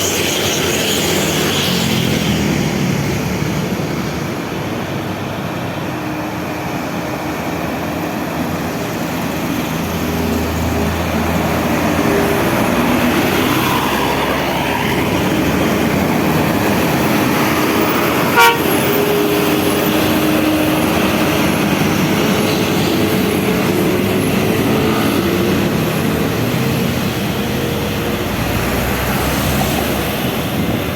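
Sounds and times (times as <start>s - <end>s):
engine and tyre roar: 0.0s - 30.9s
vehicle horns: 18.0s - 20.2s.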